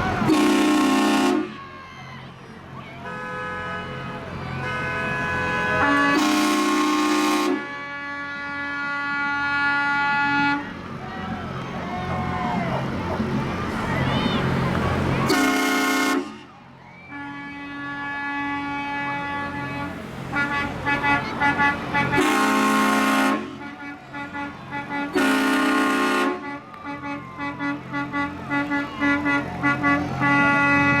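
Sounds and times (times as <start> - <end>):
train horn blasts: 0.2 - 1.8, 3.0 - 10.8, 15.2 - 16.5, 17.1 - 31.0.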